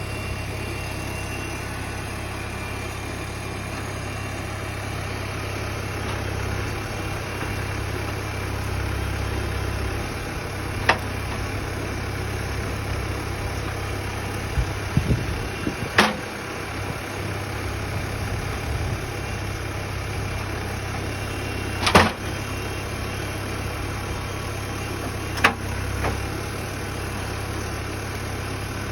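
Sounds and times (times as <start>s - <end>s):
sawmill engine running: 0.0s - 28.9s.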